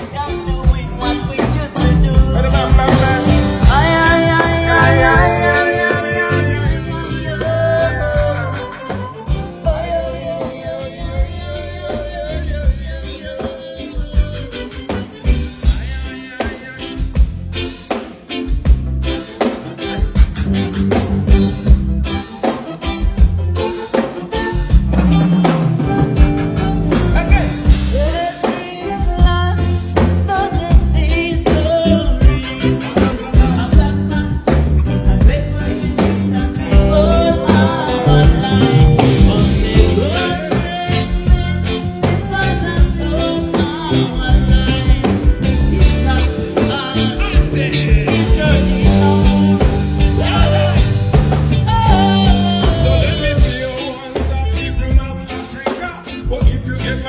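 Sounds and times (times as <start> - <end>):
band music with singer: 0.0 - 57.0
bass line: 0.0 - 57.0
drum beat: 1.4 - 7.0, 15.0 - 31.0, 32.2 - 41.7, 44.2 - 53.8.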